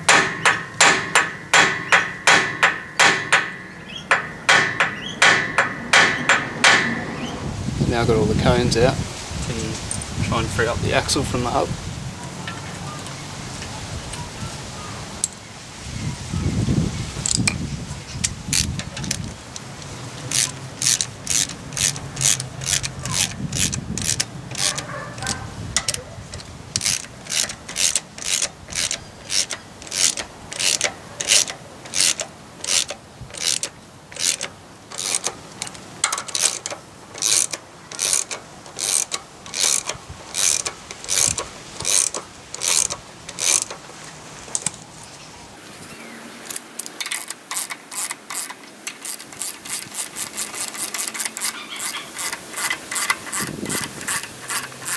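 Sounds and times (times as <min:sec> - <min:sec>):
ratchet wrench clicking: 0:18.2 - 0:43.8, 0:46.4 - 0:54.9.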